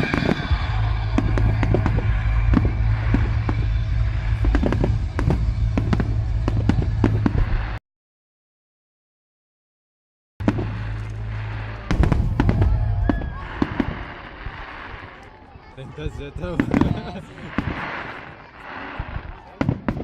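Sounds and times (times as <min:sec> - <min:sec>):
fireworks bangs and crackles: 0:00.0 - 0:07.8, 0:10.4 - 0:20.0
steady low hum: 0:00.0 - 0:07.8, 0:10.4 - 0:14.2.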